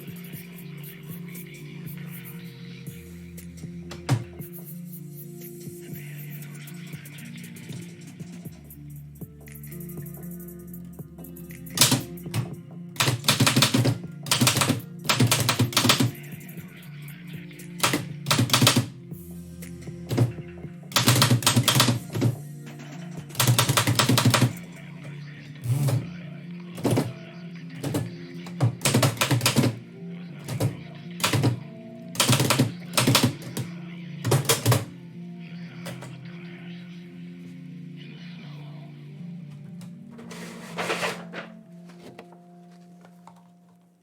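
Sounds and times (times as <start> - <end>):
background music: 0.0 - 44.0
typewriter keystrokes: 11.7 - 16.2, 17.8 - 18.9, 20.9 - 22.4, 23.3 - 24.6, 28.6 - 29.8, 30.5 - 31.6, 32.2 - 33.6.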